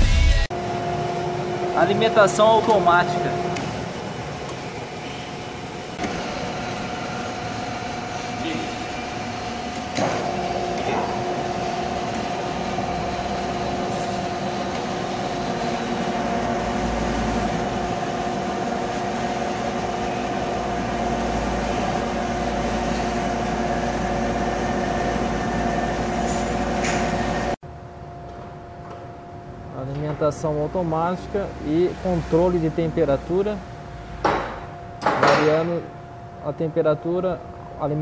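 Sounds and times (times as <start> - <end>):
constant mechanical whine: 0.0 - 38.0
pellet fireplace motor hum: 0.5 - 27.6.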